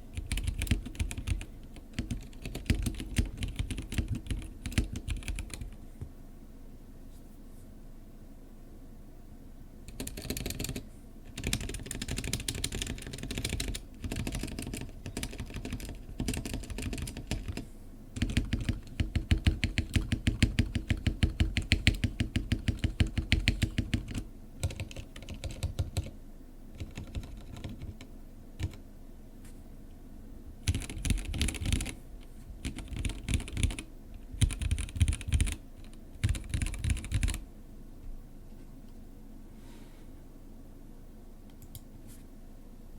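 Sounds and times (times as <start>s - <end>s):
typing on mechanical keyboard: 0.1s - 5.8s, 9.9s - 17.6s, 18.2s - 26.1s, 26.8s - 28.8s, 30.6s - 32.0s, 32.6s - 37.4s.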